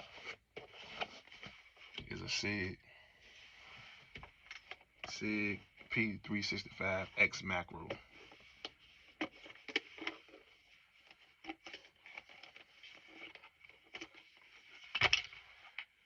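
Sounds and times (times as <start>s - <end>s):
packaging clicks and scrapes: 8.2s - 16.0s.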